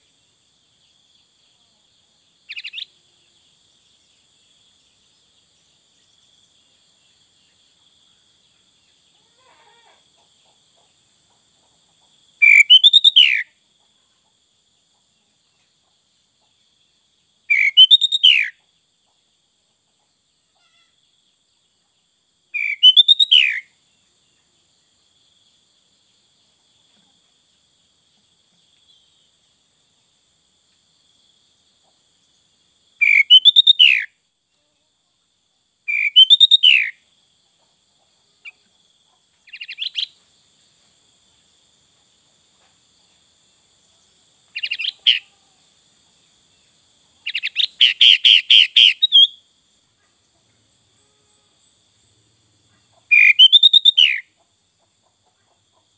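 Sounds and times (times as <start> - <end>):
bird singing whistled notes: 12.4 - 13.5, 17.5 - 18.6, 22.6 - 23.7, 33.0 - 34.1, 35.9 - 37.0, 44.6 - 45.2, 47.3 - 49.4, 53.1 - 54.3.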